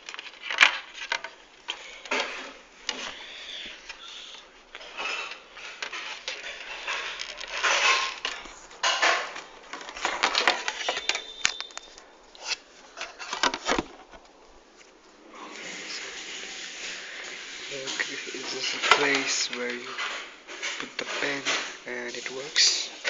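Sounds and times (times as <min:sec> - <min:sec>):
plastic casing clattering and scraping: 0:04.8 - 0:14.3.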